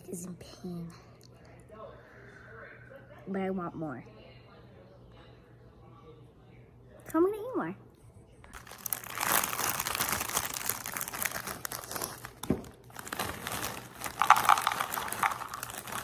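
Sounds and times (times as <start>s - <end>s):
plastic snack bag crinkling: 8.6s - 16.0s.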